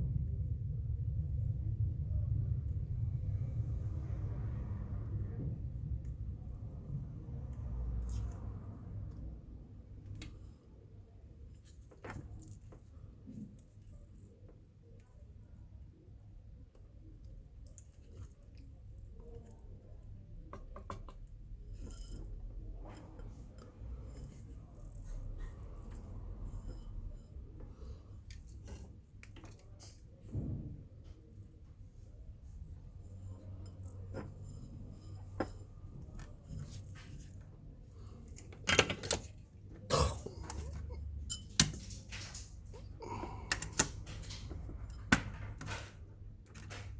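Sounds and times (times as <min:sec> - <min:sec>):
steady low hum: 0:00.0 - 0:11.6
low steady hum: 0:00.0 - 0:46.8
clicks and handling of tools: 0:40.3 - 0:46.9.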